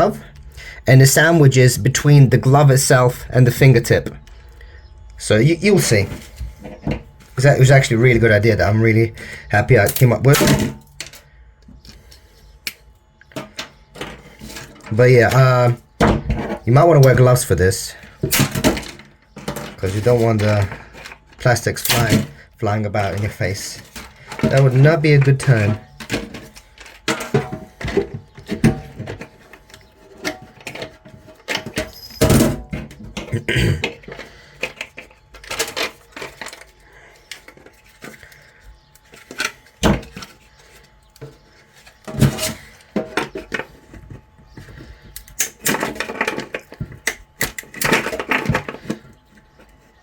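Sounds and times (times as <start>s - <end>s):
plastic snapping and cracking: 18.2s - 22.3s, 45.1s - 49.6s.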